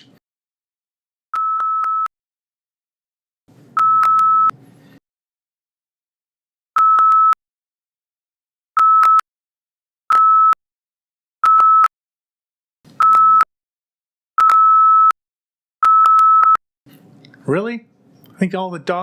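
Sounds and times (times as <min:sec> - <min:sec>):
pure tone beeps: 0:03.8 - 0:04.5, 0:13.0 - 0:13.5.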